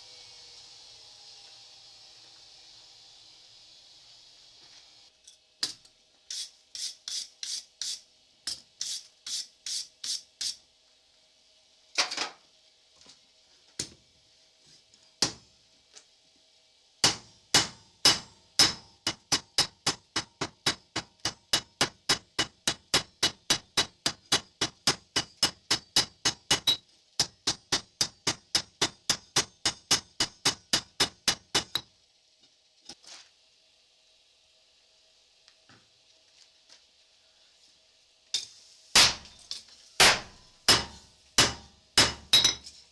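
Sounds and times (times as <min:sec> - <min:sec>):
hand tool strokes on steel: 0:06.3 - 0:08.0, 0:08.8 - 0:10.6.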